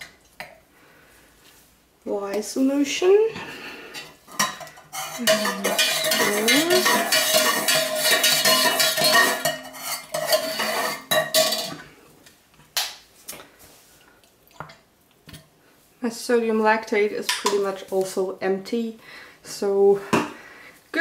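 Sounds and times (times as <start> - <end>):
utensil stirring in container: 4.4 - 11.7.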